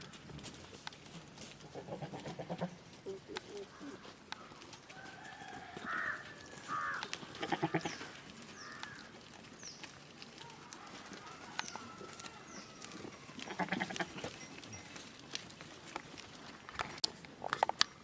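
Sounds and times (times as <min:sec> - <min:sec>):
goats bleating: 0:05.8 - 0:09.0, 0:12.0 - 0:14.3.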